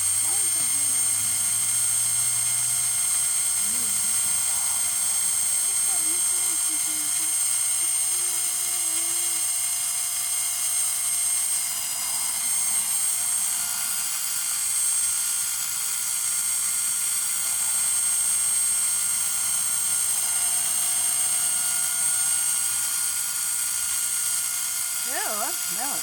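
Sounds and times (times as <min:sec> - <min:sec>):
air compressor motor whining: 0:00.0 - 0:26.0.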